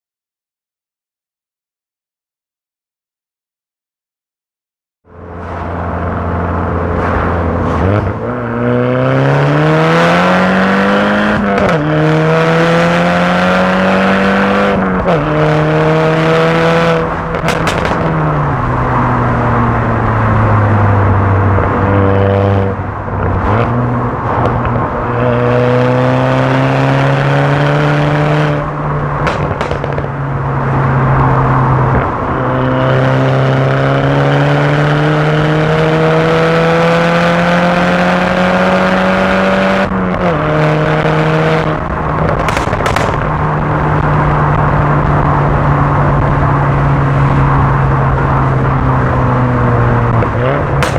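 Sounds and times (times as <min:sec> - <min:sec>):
car engine accelerating: 0:05.1 - 0:50.9
exhaust pops and crackles: 0:17.3 - 0:18.4, 0:24.3 - 0:24.8, 0:29.1 - 0:30.3, 0:41.8 - 0:45.4, 0:50.1 - 0:50.9.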